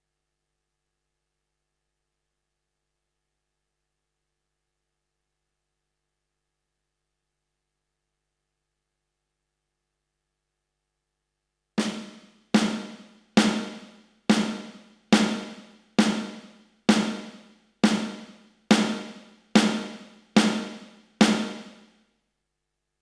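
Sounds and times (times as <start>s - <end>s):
electronic snare drum strokes: 11.8s - 21.9s.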